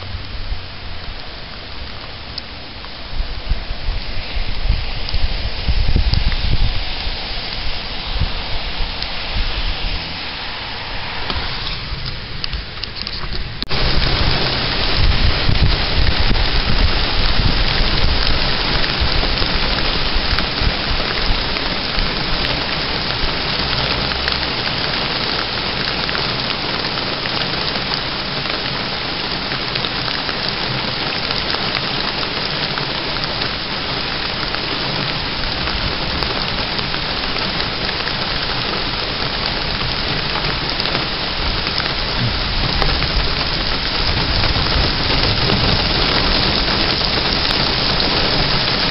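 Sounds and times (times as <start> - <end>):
low rumble: 0.0 - 24.5, 41.6 - 47.4
heavy rain falling: 0.0 - 48.9.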